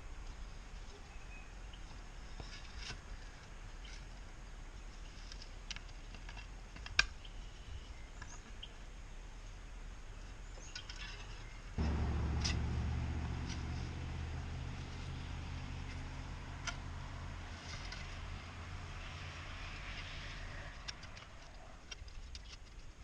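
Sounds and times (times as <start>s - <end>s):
low steady hum: 7.2s - 23.0s.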